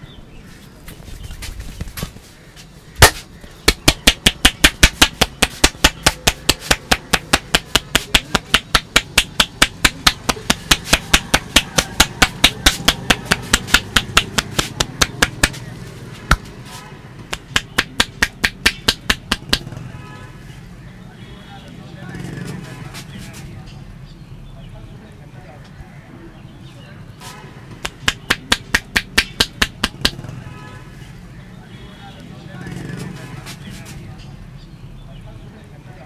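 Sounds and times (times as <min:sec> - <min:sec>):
hand slaps on body: 0:03.0 - 0:15.6, 0:17.3 - 0:19.7, 0:27.8 - 0:30.2.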